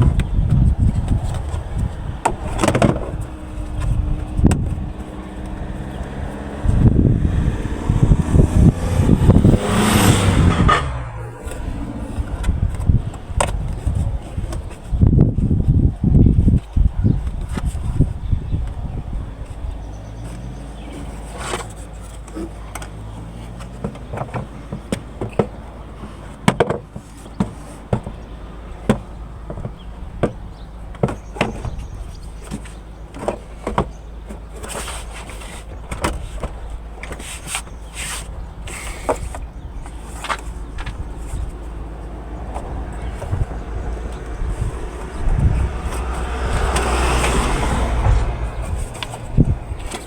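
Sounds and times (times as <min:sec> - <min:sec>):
steady low rumble: 0:00.0 - 0:21.0, 0:39.4 - 0:50.0.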